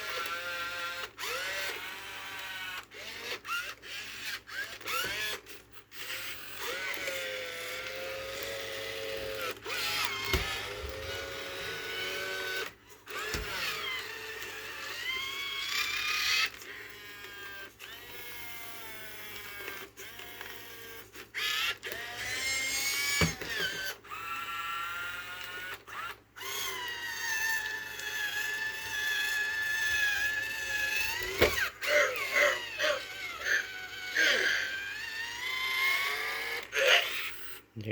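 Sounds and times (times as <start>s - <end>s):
toy robot electronic voice sounds: 26.4s - 37.9s.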